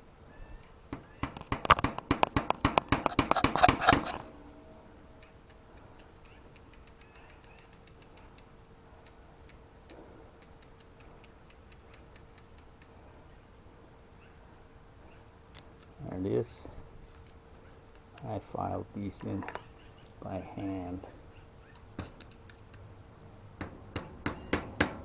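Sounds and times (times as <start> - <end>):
bicycle freewheel ratcheting: 6.0 - 8.4.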